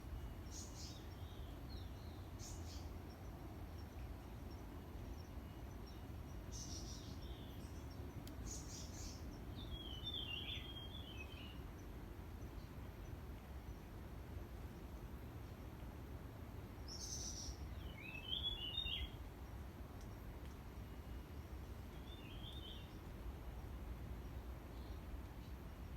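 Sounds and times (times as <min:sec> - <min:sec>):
steady low rumble: 0:00.0 - 0:18.1.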